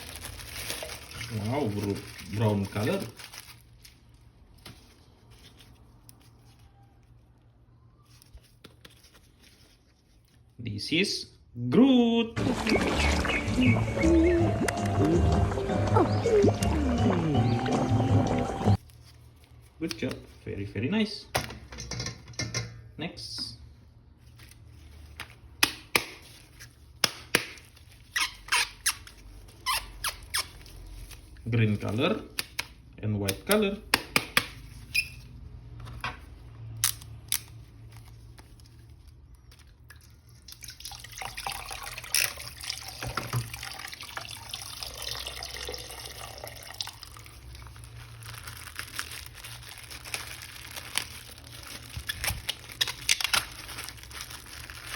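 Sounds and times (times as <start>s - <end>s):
plastic packaging squeaks: 0.0s - 8.6s, 27.8s - 31.4s, 34.7s - 35.6s, 47.4s - 54.9s.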